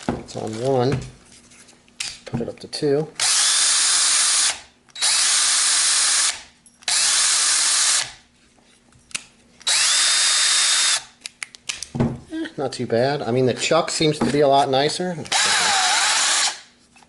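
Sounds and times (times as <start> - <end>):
cordless drill motor whine: 3.2 - 8.0, 9.7 - 11.0, 15.3 - 16.6.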